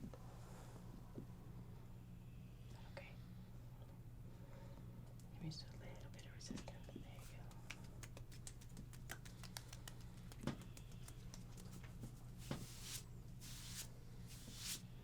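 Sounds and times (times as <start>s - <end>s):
steady low hum: 0.2s - 15.0s
small clicks and taps: 6.5s - 12.0s
hands rubbing skin: 7.3s - 14.9s
short swishes: 12.4s - 14.8s.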